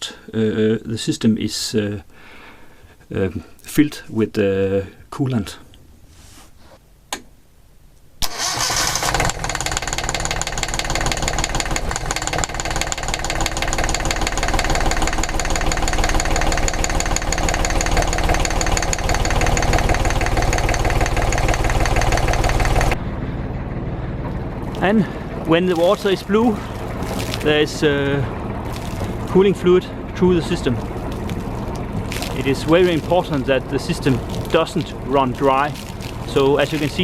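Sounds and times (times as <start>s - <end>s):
engine starter cranking: 8.2s - 23.0s
diesel engine idling: 8.2s - 37.0s.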